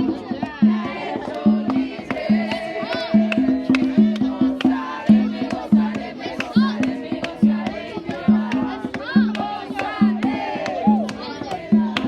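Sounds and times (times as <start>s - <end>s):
sharp percussion strikes: 0.0s - 12.0s.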